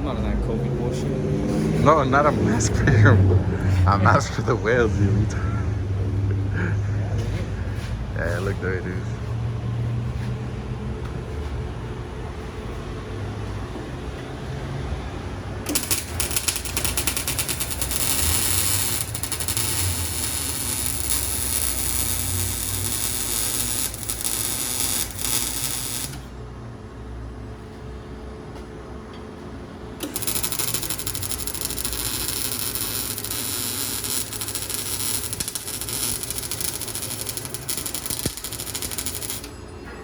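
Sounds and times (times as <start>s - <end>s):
welding arc crackling hiss: 15.7s - 26.4s, 30.0s - 39.6s.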